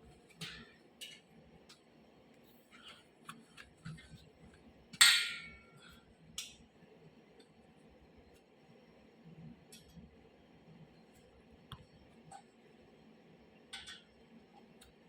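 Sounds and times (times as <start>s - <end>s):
ringing metal clang: 5.0s - 5.7s.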